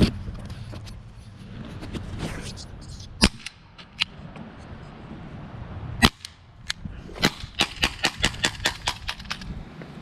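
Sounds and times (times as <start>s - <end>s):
air pistol shots: 7.2s - 9.5s.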